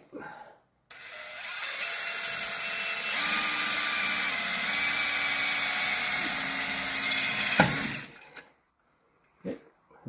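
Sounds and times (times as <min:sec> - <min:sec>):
electric drill boring through metal: 0:00.9 - 0:08.2.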